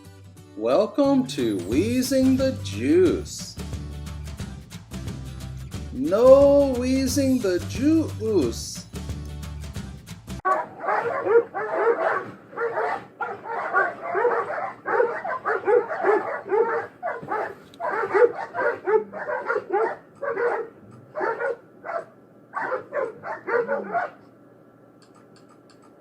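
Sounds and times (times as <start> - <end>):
dog barking: 10.5 - 24.2.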